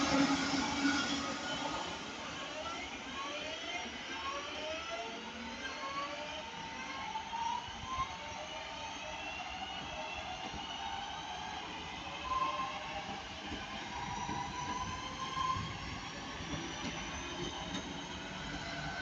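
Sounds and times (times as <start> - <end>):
train traction drive whining: 0.0 - 3.6
steady train running noise: 0.0 - 19.0.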